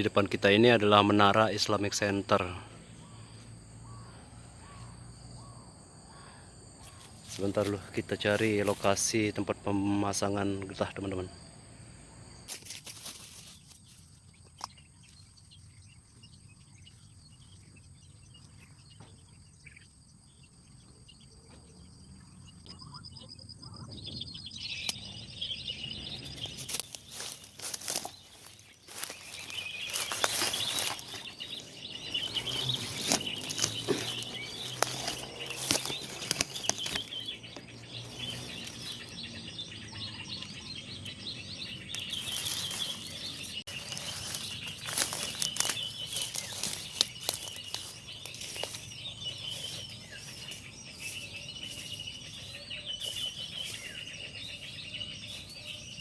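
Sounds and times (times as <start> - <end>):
small birds chirping: 0.0 - 56.0
sharp clicks and rustles: 32.3 - 39.0.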